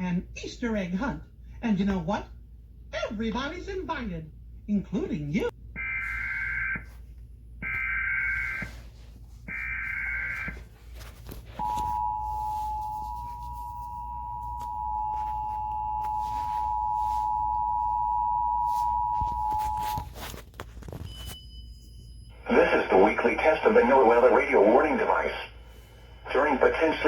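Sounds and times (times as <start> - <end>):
two-tone attention signal: 11.6 - 20.0.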